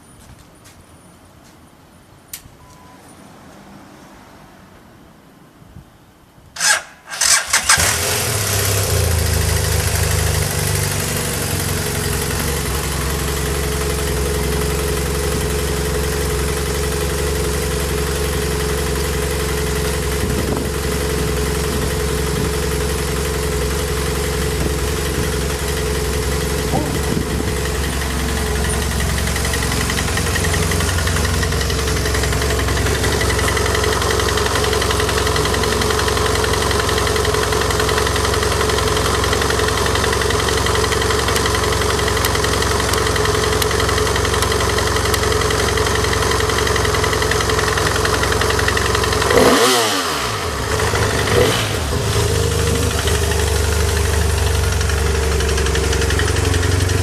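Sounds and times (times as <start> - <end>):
electric starter cranking: 6.6 - 10.4
engine winding down: 6.6 - 57.0
motorcycle engine idling: 7.2 - 57.0.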